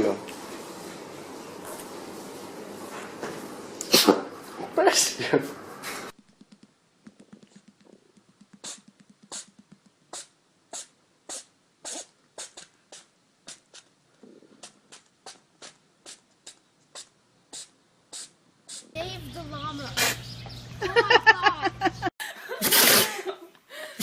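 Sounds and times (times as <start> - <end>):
small animal sneezing: 3.8 - 4.3, 8.6 - 13.9, 14.6 - 19.0, 20.0 - 20.2, 22.6 - 23.2.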